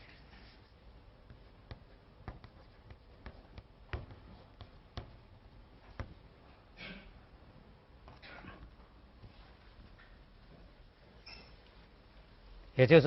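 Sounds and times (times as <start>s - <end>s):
writing on a board: 0.0s - 6.3s.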